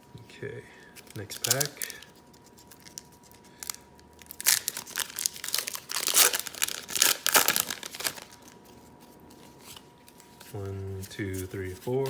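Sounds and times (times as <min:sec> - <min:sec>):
foil wrapper crinkling: 0:01.0 - 0:08.8.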